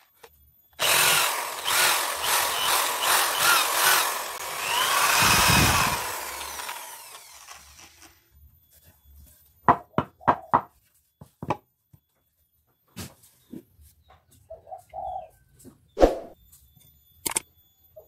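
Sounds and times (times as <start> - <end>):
power tool running on wood: 0.8 - 8.2.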